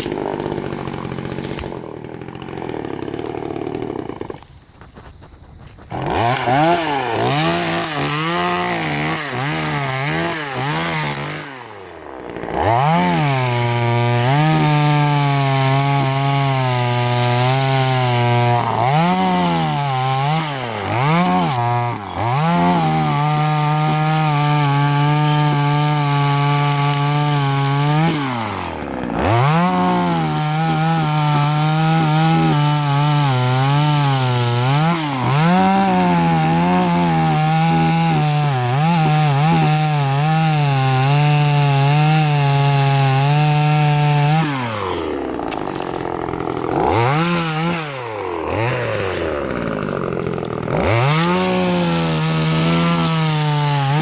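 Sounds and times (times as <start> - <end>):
chainsaw revving and cutting wood: 0.0 - 54.0.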